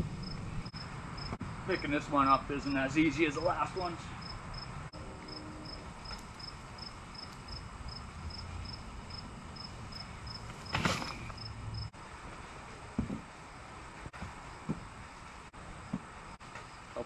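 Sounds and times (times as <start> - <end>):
cricket chirping: 0.1 - 1.8, 4.2 - 11.9.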